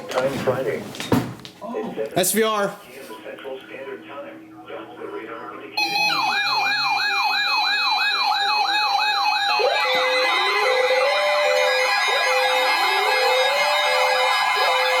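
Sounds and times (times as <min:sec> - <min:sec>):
electronic siren sweep: 0:05.8 - 0:15.0
on-off alarm tone: 0:05.8 - 0:15.0
rising siren wail: 0:05.8 - 0:15.0
steady high tones: 0:05.8 - 0:15.0.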